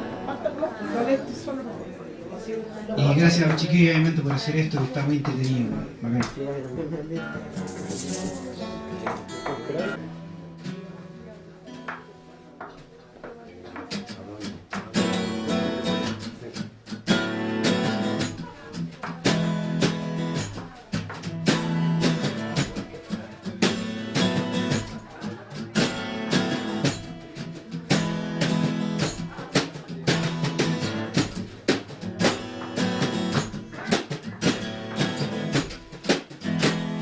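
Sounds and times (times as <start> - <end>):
acoustic guitar strumming chords: 6.8 - 12.3, 13.9 - 37.0.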